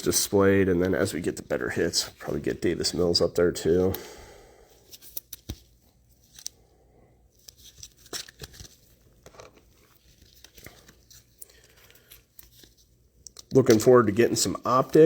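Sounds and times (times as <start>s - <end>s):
small clicks of cards handled: 4.8s - 6.6s, 7.4s - 13.8s
plastic packaging crinkling and tearing: 7.4s - 12.8s.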